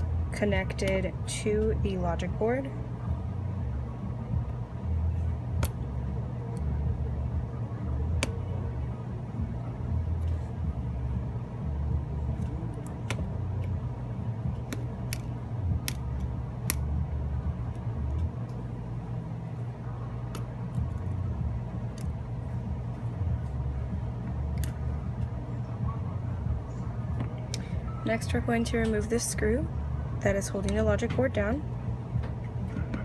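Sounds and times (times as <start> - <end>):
steady low rumble: 0.0 - 33.0
small sharp connector clicks: 14.7 - 17.0, 24.5 - 24.8.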